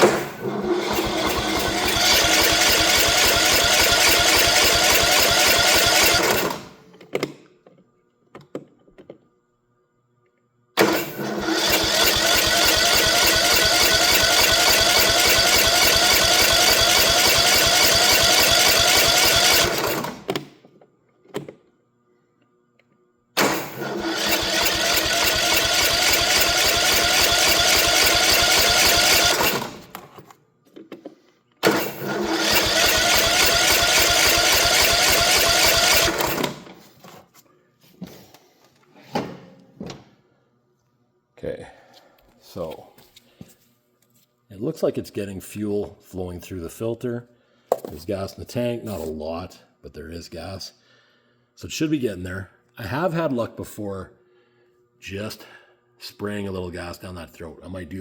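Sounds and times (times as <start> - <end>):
electric starter cranking engine: 0.0 - 6.8, 10.8 - 20.5, 23.4 - 30.2, 31.6 - 36.8.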